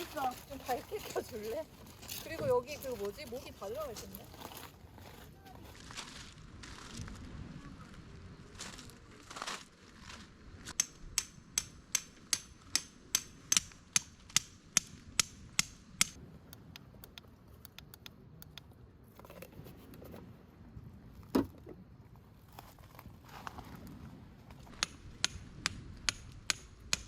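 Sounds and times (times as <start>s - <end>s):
sharp metallic taps: 10.8s - 16.2s.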